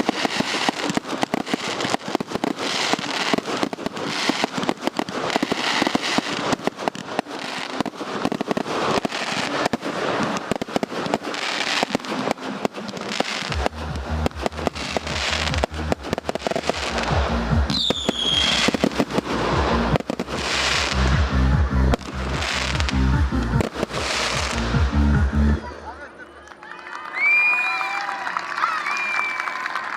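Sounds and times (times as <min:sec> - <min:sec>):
fireworks bangs and crackles: 0:00.0 - 0:25.7
music with heavy bass beat: 0:13.5 - 0:25.6
falling firework whistle: 0:17.7 - 0:21.0, 0:27.2 - 0:29.8.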